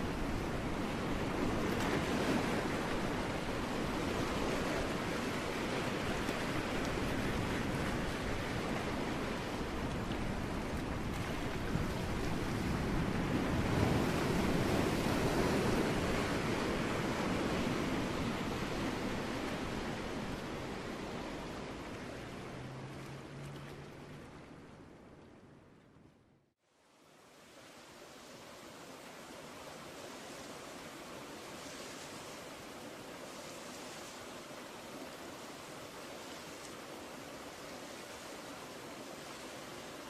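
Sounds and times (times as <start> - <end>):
ocean waves breaking on rocks: 0.0 - 24.8.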